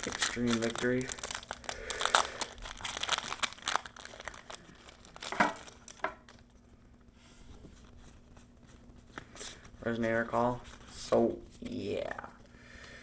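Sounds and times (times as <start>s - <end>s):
foil wrapper crinkling and tearing: 0.0s - 6.5s.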